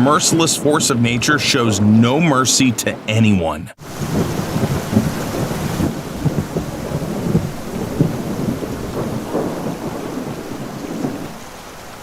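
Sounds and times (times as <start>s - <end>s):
heavy rain: 3.8s - 12.0s.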